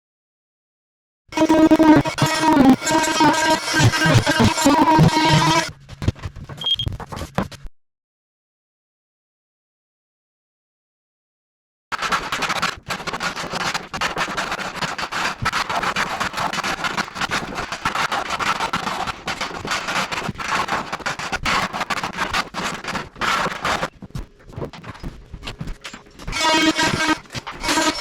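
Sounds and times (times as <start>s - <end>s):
rough scraping: 1.4s - 5.7s, 25.9s - 28.0s.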